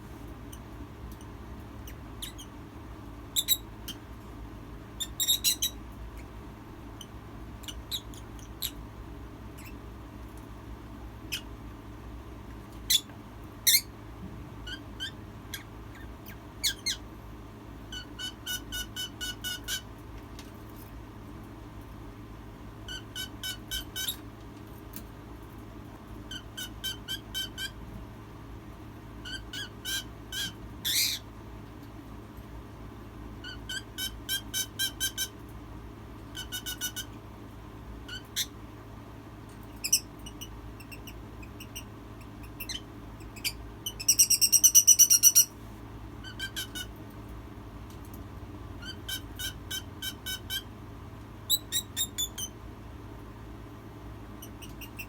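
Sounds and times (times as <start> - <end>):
steady low hum: 0.0 - 55.0
hen peeping trills: 39.8 - 45.5.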